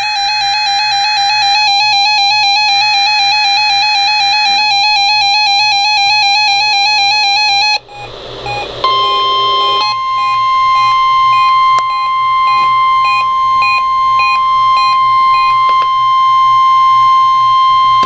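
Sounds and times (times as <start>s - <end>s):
electronic warbling alert tone: 7.9s - 15.9s.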